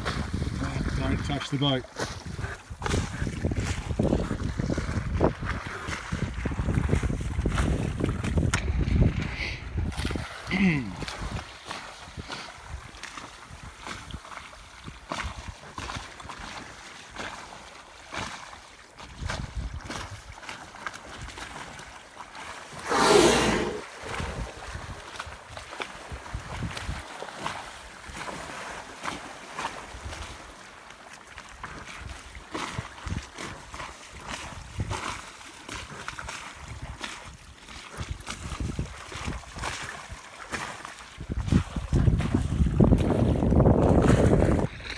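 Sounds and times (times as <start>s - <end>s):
wind buffeting microphone: 0.0s - 1.4s, 2.0s - 10.4s, 22.8s - 25.6s, 26.2s - 27.0s, 41.2s - 44.9s
water sloshing against hull: 0.0s - 44.9s
whale blowing: 22.7s - 24.8s.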